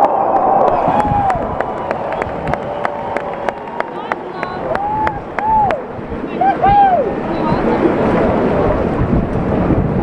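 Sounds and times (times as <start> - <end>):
sharp claps: 0.0 - 5.8.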